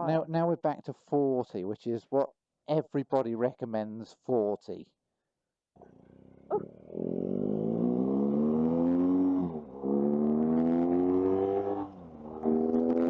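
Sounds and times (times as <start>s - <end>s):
motorcycle engine accelerating: 5.8s - 13.0s.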